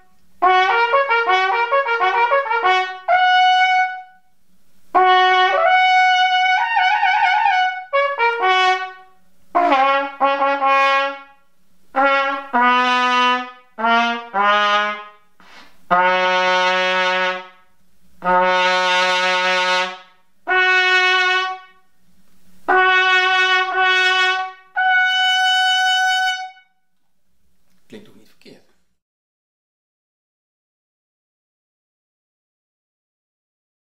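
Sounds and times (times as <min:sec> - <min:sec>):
brass instrument held notes: 0:00.0 - 0:04.3, 0:04.9 - 0:17.6, 0:18.2 - 0:21.8, 0:22.7 - 0:26.8.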